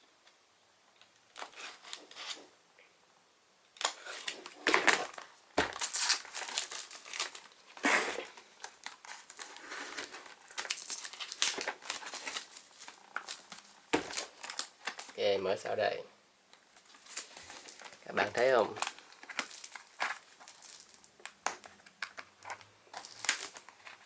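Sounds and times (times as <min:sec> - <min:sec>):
plastic shrink wrap crinkling and tearing: 0:03.8 - 0:15.3, 0:16.7 - 0:24.0.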